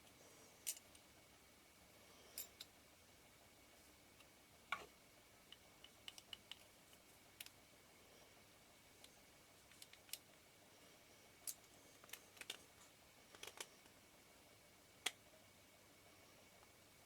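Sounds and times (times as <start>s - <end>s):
small tools clicking and tapping: 5.5s - 7.6s.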